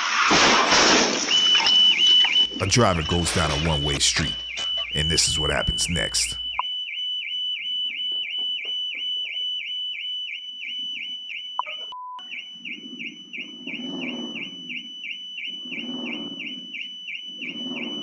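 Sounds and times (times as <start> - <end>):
car alarm pulsing tone: 2.5 - 8.1, 9.7 - 18.0.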